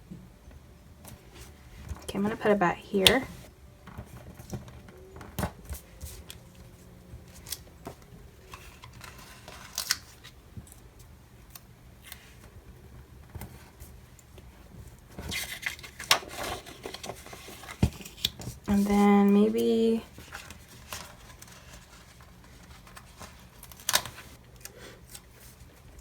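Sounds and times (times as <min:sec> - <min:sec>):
paper pages rustling: 0:05.4 - 0:10.8, 0:15.1 - 0:26.0.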